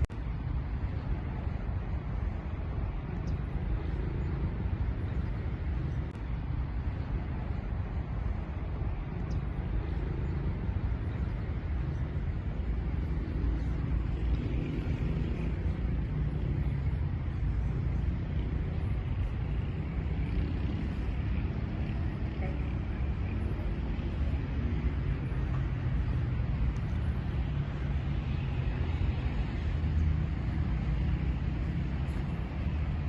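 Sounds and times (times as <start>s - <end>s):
steady low rumble: 0.0s - 33.0s
faint distant voices: 1.4s - 33.0s.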